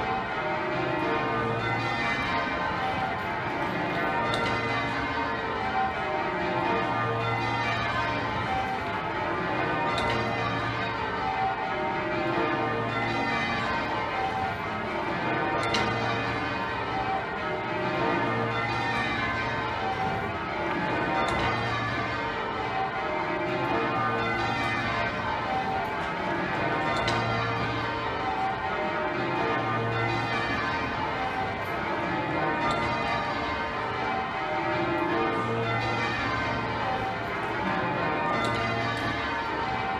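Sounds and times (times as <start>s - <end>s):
church bells change ringing: 0.0s - 39.9s.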